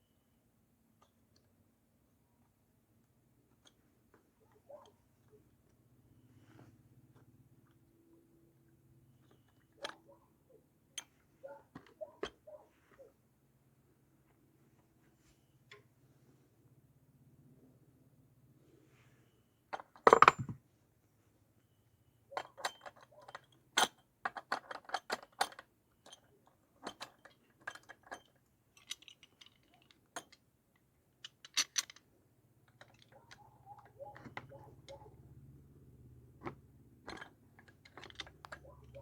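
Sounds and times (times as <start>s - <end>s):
small metal tools clinking: 20.0s - 20.6s, 22.4s - 30.4s, 31.2s - 32.1s, 37.0s - 39.0s.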